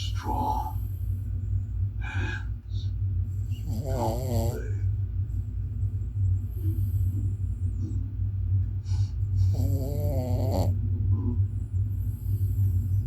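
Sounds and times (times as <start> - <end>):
small dog snoring: 3.4 - 4.8, 9.4 - 13.0.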